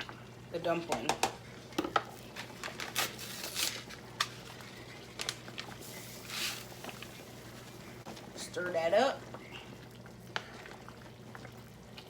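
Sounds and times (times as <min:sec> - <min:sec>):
packet rustling and tearing: 0:02.1 - 0:06.8.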